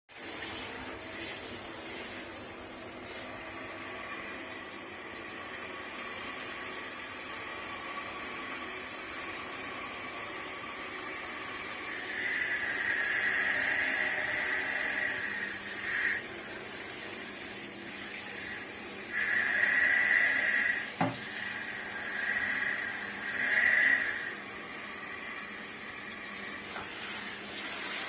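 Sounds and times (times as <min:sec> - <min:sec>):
water spray hissing: 0:09.3 - 0:28.0.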